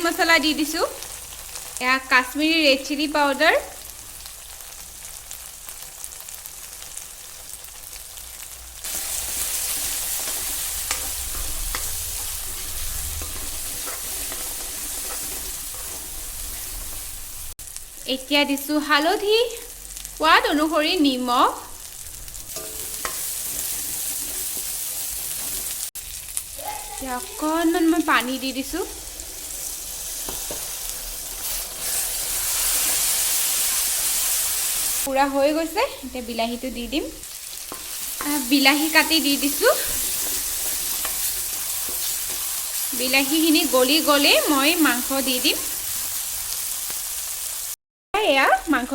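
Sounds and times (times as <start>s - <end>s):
paste sizzling in hot oil: 0.0s - 47.8s
spatula scraping and tapping pan: 9.3s - 17.0s, 22.5s - 25.8s, 30.2s - 30.8s, 37.7s - 42.8s.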